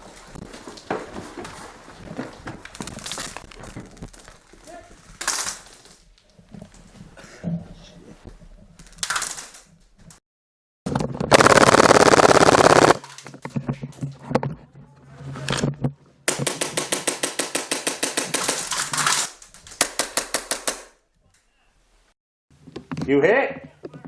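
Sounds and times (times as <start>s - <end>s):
airsoft guns firing bursts: 11.3s - 13.0s, 16.3s - 19.1s, 19.8s - 20.9s.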